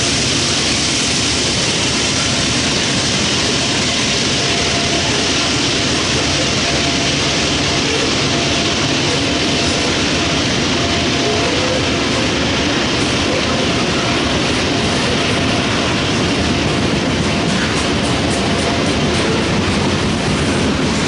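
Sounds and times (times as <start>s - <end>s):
freight train wheels rumbling: 0.0s - 21.0s.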